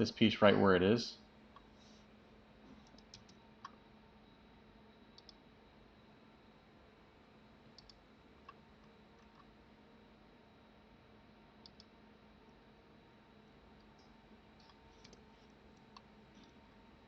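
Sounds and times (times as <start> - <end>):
faint hum: 0.0 - 17.0
computer mouse clicks: 2.8 - 3.8, 5.2 - 5.4, 7.8 - 8.6, 9.2 - 9.5, 11.6 - 12.0, 13.8 - 16.6.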